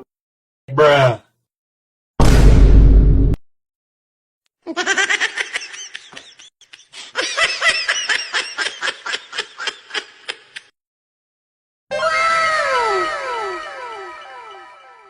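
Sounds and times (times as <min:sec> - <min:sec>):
person laughing: 0:04.7 - 0:10.7.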